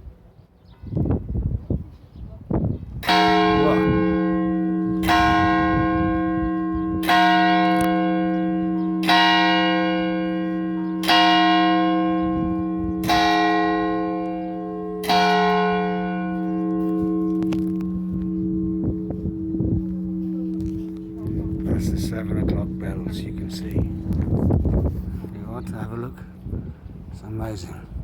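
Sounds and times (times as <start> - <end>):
large church bell striking: 2.9 - 28.0.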